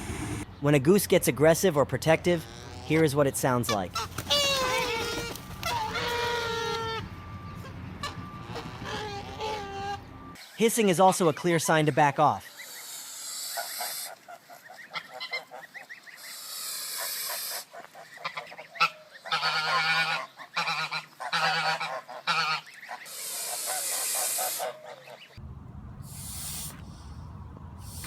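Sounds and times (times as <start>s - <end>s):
goose hissing: 0.0s - 0.5s, 23.1s - 24.8s, 25.9s - 28.0s
low rumble: 0.0s - 0.6s, 25.4s - 28.0s
goose honking harshly: 2.3s - 10.4s, 18.2s - 25.3s.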